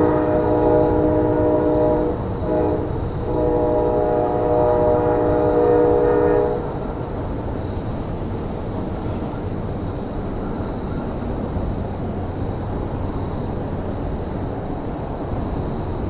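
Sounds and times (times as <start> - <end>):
locomotive air horn blasts: 0.0 - 6.8.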